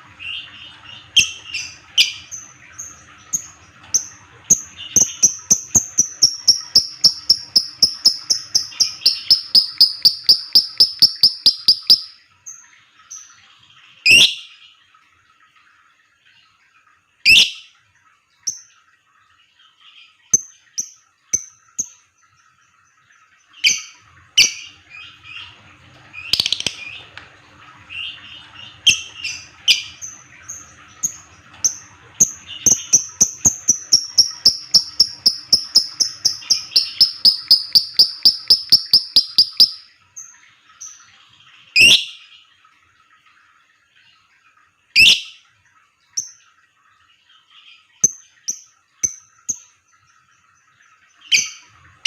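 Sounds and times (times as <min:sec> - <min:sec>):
rapid clipped bird notes: 0:05.0 - 0:12.1.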